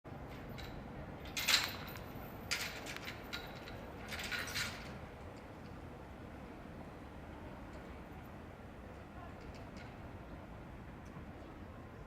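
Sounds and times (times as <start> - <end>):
low outdoor background: 0.1 - 12.0
iron gate scraping and rattling: 0.2 - 5.5.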